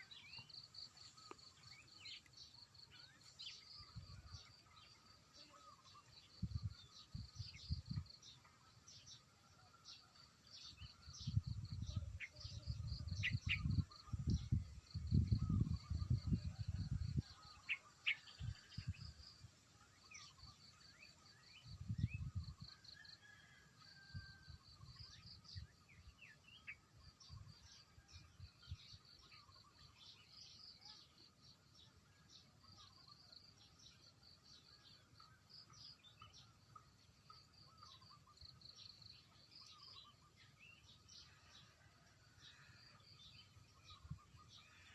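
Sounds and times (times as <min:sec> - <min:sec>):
small birds chirping: 0:28.8 - 0:41.8.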